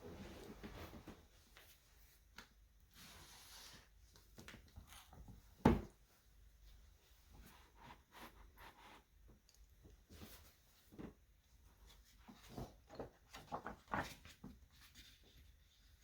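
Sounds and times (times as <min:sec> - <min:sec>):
rustle of handling: 0:10.0 - 0:16.0.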